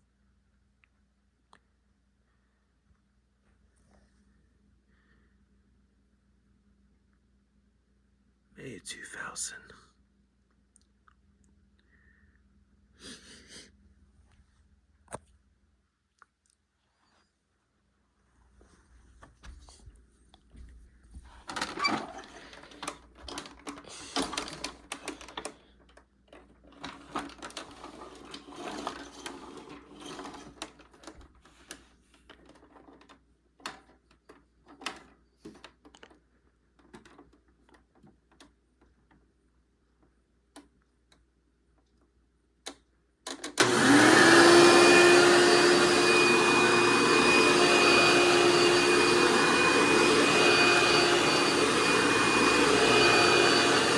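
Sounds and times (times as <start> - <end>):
vacuum cleaner motor whine: 21.5 - 23.0, 27.2 - 30.6, 43.6 - 53.9.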